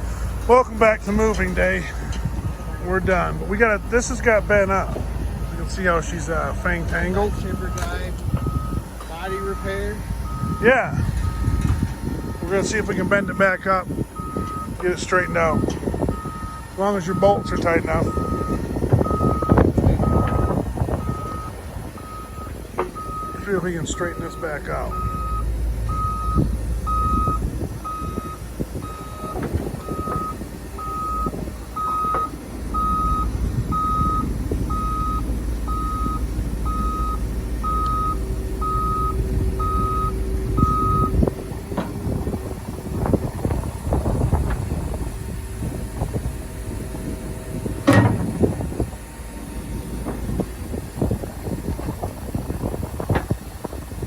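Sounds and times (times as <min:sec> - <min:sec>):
diesel engine running: 0:00.0 - 0:54.0
reversing alarm beeping: 0:00.2 - 0:44.2, 0:46.8 - 0:48.8.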